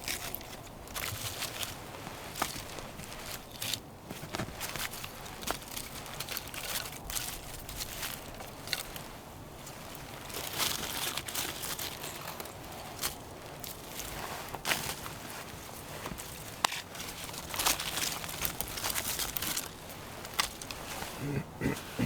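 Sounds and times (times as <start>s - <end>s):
footsteps crunching in snow: 0.9s - 6.5s.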